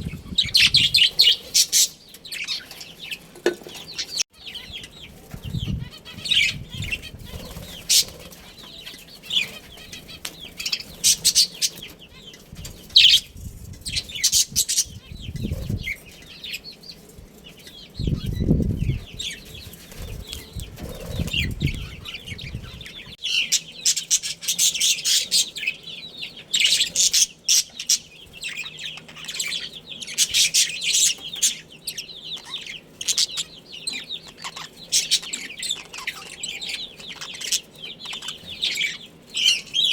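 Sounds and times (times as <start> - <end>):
budgerigars chirping and chattering: 0.0 - 39.9
wing flapping: 6.5 - 8.5, 18.6 - 22.0.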